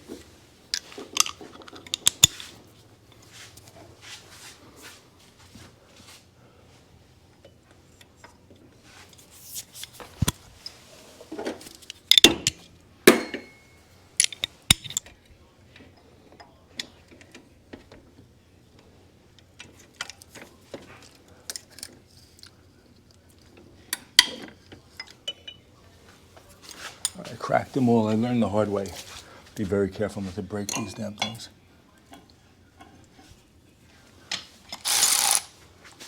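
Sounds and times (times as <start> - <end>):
metal hand tools clinking: 34.8 - 35.5.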